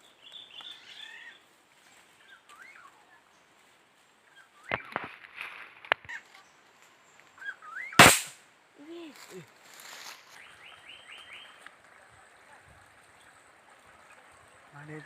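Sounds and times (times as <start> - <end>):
rifle shot: 8.0 - 8.4
high bird chirps: 10.4 - 11.6.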